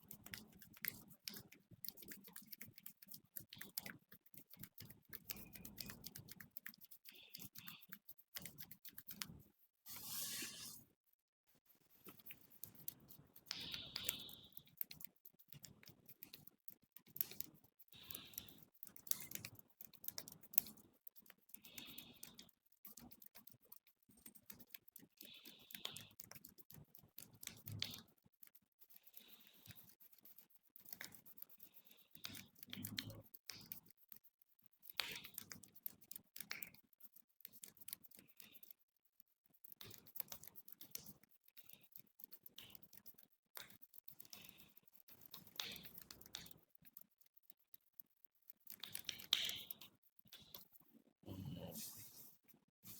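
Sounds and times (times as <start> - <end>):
fingers rustling through hair: 9.9 - 10.8
fingers scratching through hair: 9.9 - 10.8, 26.3 - 50.9.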